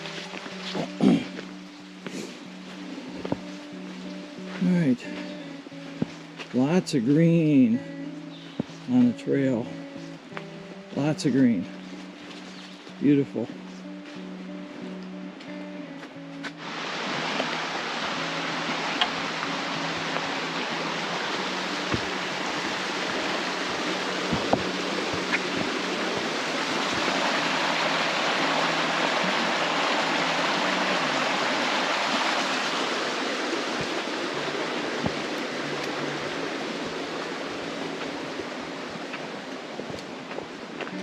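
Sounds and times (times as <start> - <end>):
stream water rushing: 0.0 - 41.0
sharp taps: 24.3 - 26.3.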